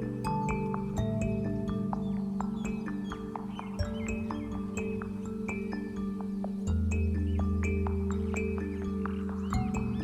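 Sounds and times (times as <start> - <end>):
soft background music: 0.0 - 10.0.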